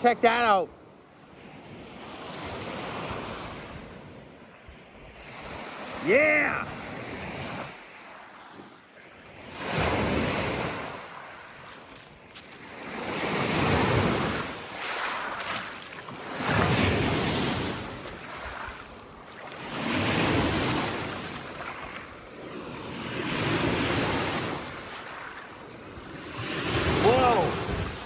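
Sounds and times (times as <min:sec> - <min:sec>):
waves washing onto rocky beach: 0:05.2 - 0:28.0
wind buffeting microphone: 0:25.8 - 0:28.0.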